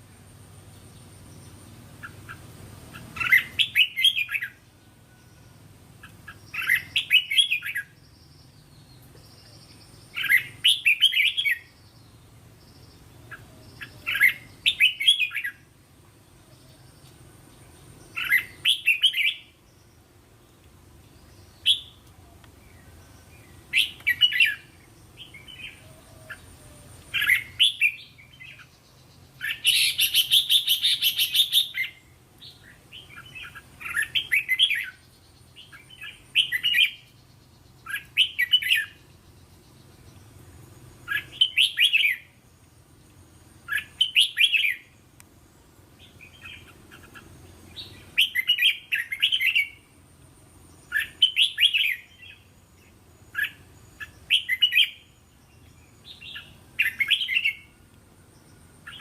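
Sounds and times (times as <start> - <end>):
bird whistling song: 0.9 - 15.7, 18.1 - 20.0, 21.3 - 22.0, 22.8 - 40.1, 41.0 - 42.4, 43.6 - 45.0, 46.0 - 49.9, 50.8 - 57.8
bird harsh chattering call: 29.4 - 32.0.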